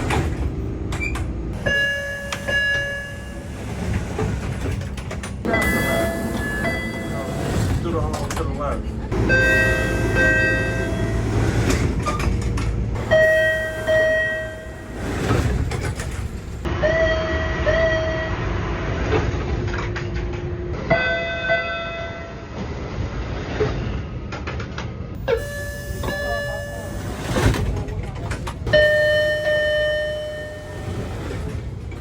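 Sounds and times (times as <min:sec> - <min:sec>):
train car rumble: 0:00.0 - 0:32.0
two-note electronic door chime: 0:25.2 - 0:27.4, 0:28.7 - 0:31.1.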